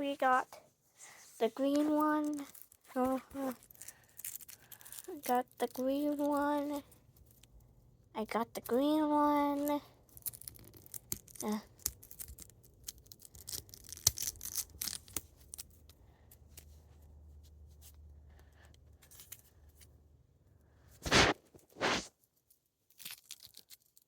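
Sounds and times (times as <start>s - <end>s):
plastic packaging crinkling and tearing: 1.6s - 5.7s, 10.2s - 15.8s, 22.9s - 24.0s.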